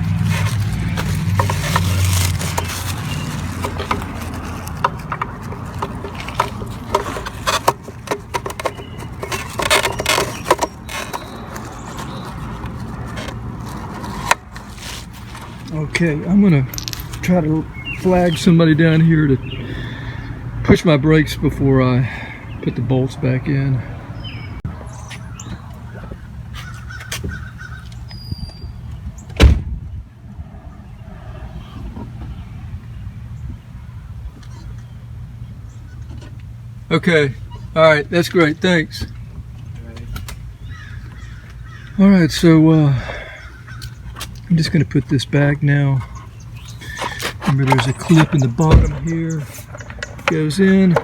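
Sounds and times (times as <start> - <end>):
scraping rustle: 0.0 - 18.4
small clicks and knocks: 16.7 - 17.2, 49.4 - 51.0
car door shutting: 29.4 - 29.8, 47.2 - 49.1.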